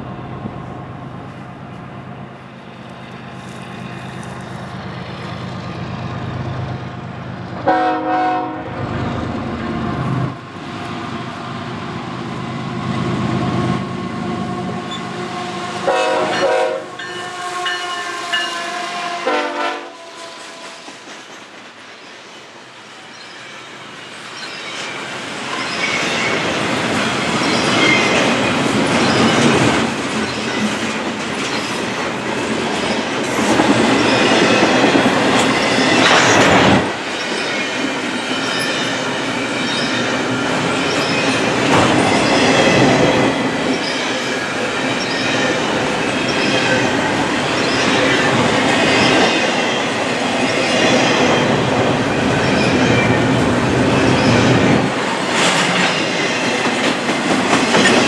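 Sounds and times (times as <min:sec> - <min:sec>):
freight train wheels clicking: 0:24.8 - 0:58.0.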